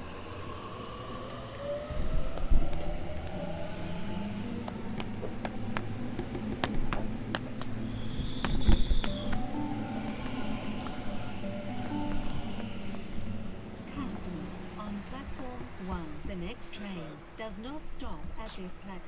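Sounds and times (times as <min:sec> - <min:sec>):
train motor whine: 0:00.0 - 0:16.6
wheels clicking over rail joints: 0:01.5 - 0:16.6
high steady squeal: 0:07.8 - 0:14.8.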